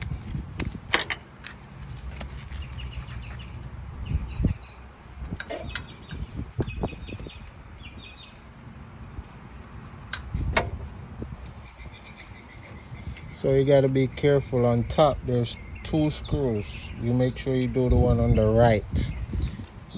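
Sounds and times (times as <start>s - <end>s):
bird chirping trills: 2.5s - 8.6s, 11.5s - 19.9s.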